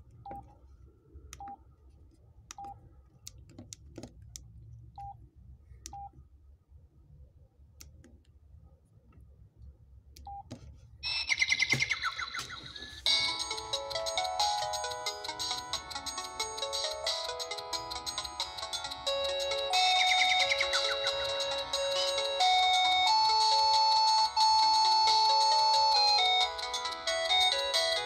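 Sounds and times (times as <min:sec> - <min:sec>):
phone ringtone melody: 0:12.9 - 0:28.0.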